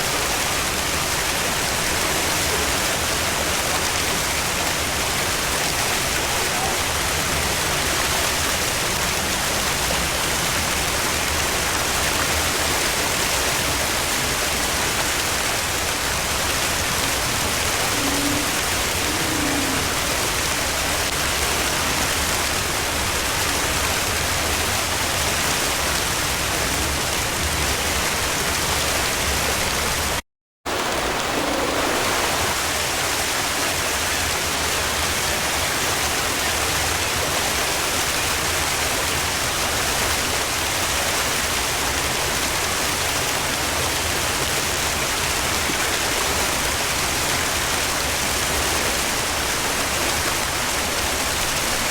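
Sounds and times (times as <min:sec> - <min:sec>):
hiss of falling water: 0:00.0 - 0:26.0, 0:30.7 - 0:40.0.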